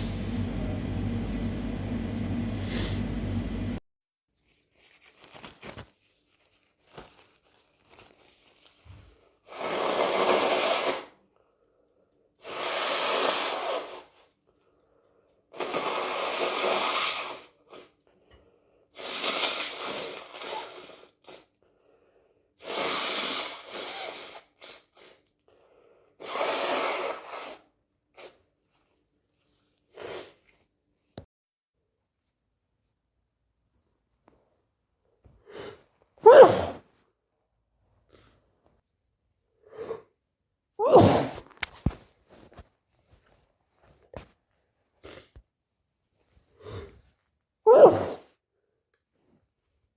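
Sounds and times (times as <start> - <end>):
person blowing nose: 2.6 - 3.1, 9.5 - 11.2, 12.4 - 14.2, 15.6 - 18.0, 18.9 - 21.5, 22.6 - 25.2, 26.2 - 28.4, 29.9 - 30.4, 35.4 - 36.8, 40.8 - 41.5, 47.7 - 48.2.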